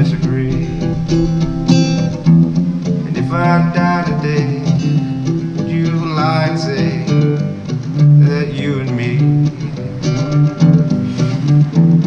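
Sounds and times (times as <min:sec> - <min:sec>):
acoustic guitar strumming: 0:00.0 - 0:12.0
person singing: 0:03.0 - 0:12.0.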